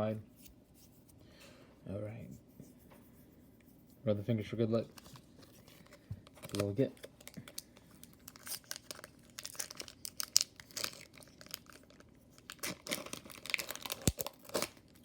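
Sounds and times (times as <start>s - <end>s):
foil wrapper torn and crinkled: 6.3s - 15.0s.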